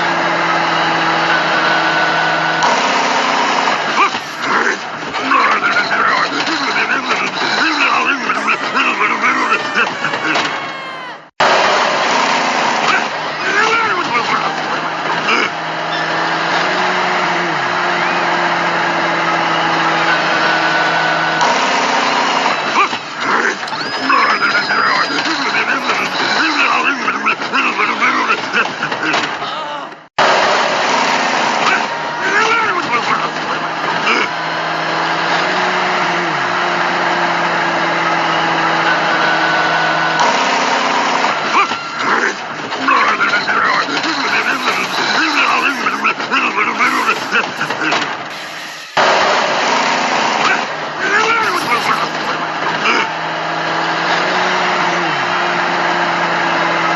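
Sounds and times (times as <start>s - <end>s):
vehicle engine running: 0.0s - 10.2s, 11.4s - 28.6s, 30.2s - 48.3s
brief voices: 0.0s - 30.0s, 41.0s - 49.1s, 50.4s - 53.2s.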